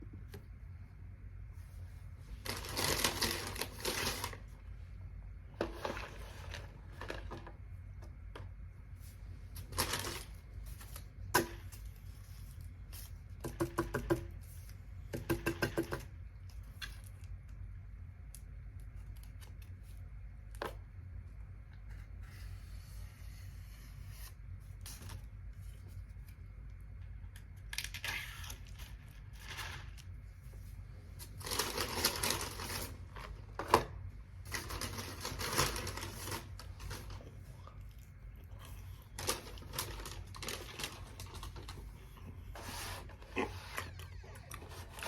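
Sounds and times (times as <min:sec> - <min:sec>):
paper packaging rustling: 0:02.3 - 0:04.6, 0:09.1 - 0:13.2, 0:27.7 - 0:37.4, 0:38.6 - 0:45.0.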